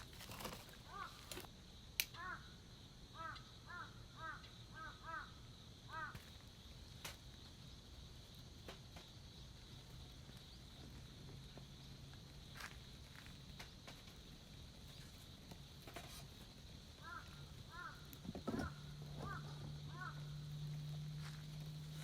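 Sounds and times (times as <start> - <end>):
crow cawing: 0.8 - 1.5, 2.2 - 2.5, 3.2 - 6.2, 17.0 - 20.4.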